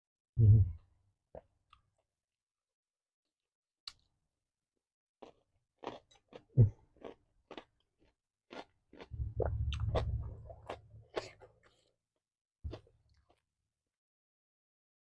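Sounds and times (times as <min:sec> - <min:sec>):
close-miked chewing: 0:05.8 - 0:12.0
low rumble: 0:09.1 - 0:11.1.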